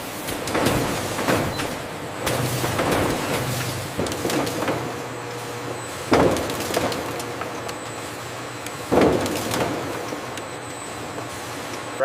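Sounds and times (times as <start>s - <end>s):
loud machine clunk: 0.0s - 7.7s, 8.8s - 10.4s
factory machinery humming: 0.0s - 12.0s.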